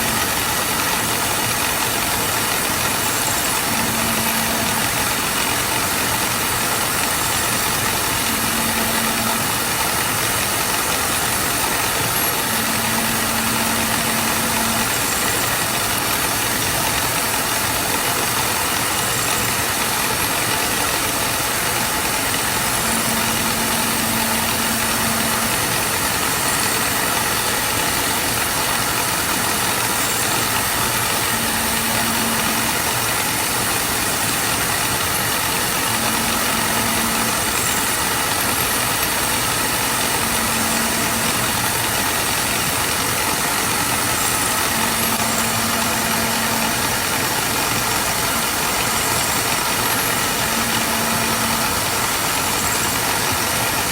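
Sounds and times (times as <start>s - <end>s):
workshop machinery hiss and drone: 0.0s - 53.9s.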